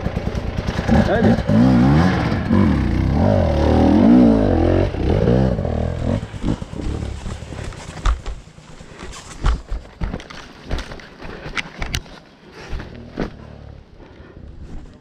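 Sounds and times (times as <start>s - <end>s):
motorcycle engine revving: 0.0s - 8.3s.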